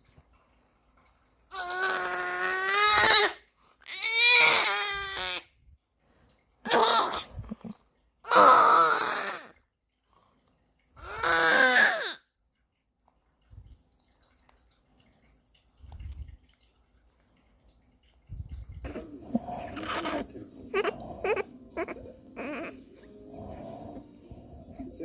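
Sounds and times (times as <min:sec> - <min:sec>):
baby coughing: 0:06.7 - 0:07.2, 0:18.9 - 0:22.8.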